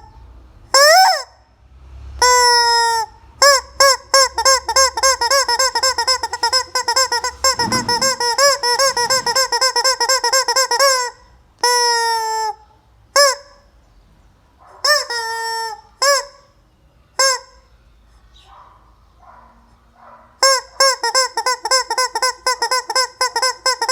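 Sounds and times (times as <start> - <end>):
rubber chicken toy squawking: 0.7 - 1.4, 2.2 - 13.6, 14.8 - 16.5, 17.2 - 17.6, 20.4 - 23.9.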